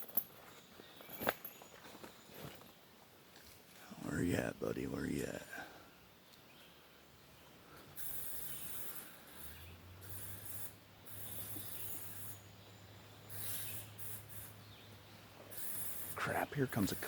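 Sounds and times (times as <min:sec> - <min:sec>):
distant car engine hum: 0:07.6 - 0:17.0
high-pitched hissing: 0:08.0 - 0:12.5, 0:13.3 - 0:14.6, 0:15.5 - 0:17.0.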